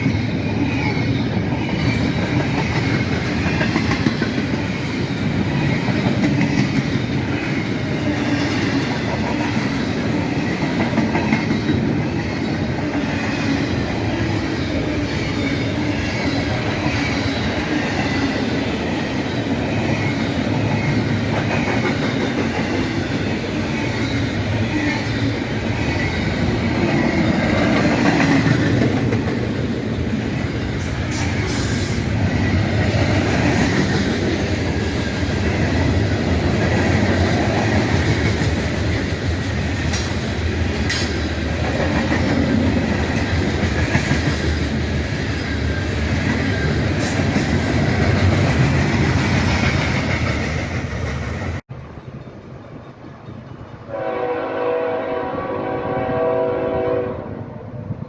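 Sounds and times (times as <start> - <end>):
freight train cars rolling past: 0.0 - 58.0
high squeal from wheels: 30.3 - 32.6.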